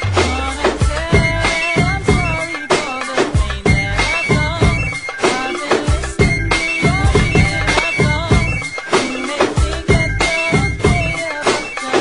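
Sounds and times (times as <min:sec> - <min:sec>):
wavering melody: 0:03.8 - 0:12.0.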